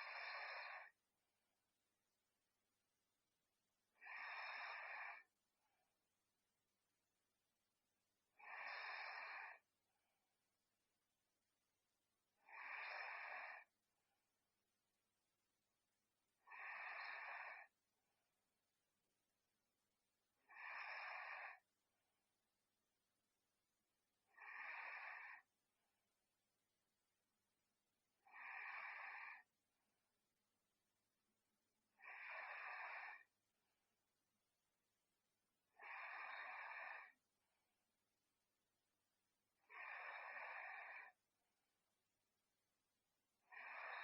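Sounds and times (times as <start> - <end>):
person snoring: 0.0 - 0.9, 4.0 - 5.3, 8.4 - 9.6, 12.4 - 13.7, 16.4 - 17.7, 20.4 - 21.6, 24.3 - 25.5, 28.3 - 29.5, 31.9 - 33.3, 35.8 - 37.2, 39.7 - 41.2.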